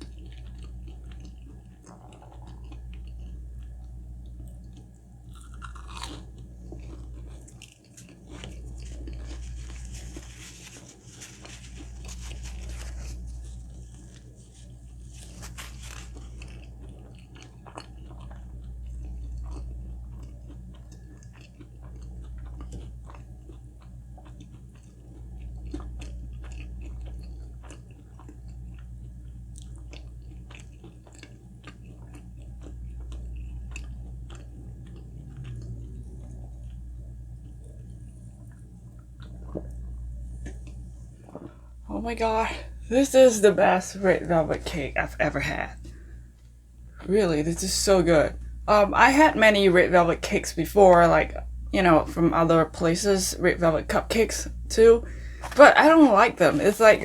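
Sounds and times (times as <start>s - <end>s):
person chewing food: 0.0s - 41.8s, 45.7s - 47.1s, 54.5s - 55.6s
steady low hum: 0.0s - 57.0s.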